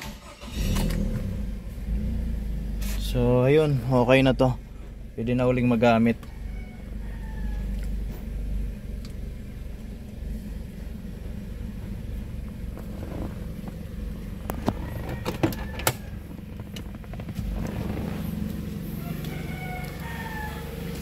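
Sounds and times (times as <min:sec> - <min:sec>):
car engine idling: 0:00.0 - 0:21.0
sharp clicks and knocks: 0:14.4 - 0:17.8.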